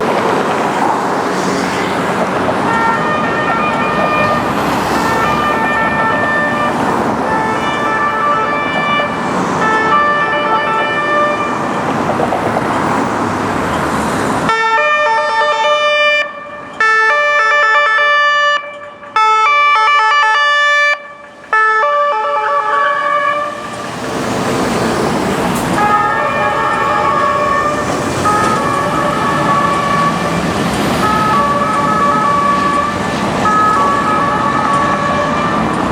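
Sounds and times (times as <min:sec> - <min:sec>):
car engine and road noise: 0:00.0 - 0:14.6, 0:22.8 - 0:35.9
two-tone police siren: 0:01.5 - 0:11.8, 0:14.5 - 0:23.8, 0:25.8 - 0:35.9.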